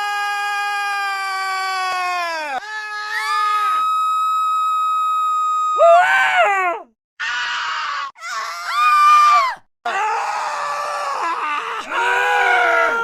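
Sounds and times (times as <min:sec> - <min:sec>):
high-pitched scream: 0:02.6 - 0:06.5, 0:07.2 - 0:11.2.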